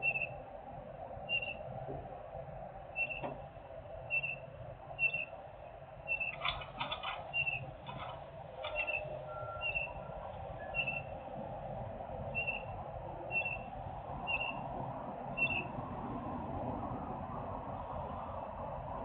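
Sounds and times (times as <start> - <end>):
bird chirping: 0.0 - 0.3, 1.3 - 1.6, 3.0 - 3.2, 4.1 - 4.4, 5.0 - 5.3, 6.1 - 10.0, 10.6 - 11.1, 12.4 - 12.7, 13.3 - 13.7, 14.3 - 14.6, 15.4 - 15.7.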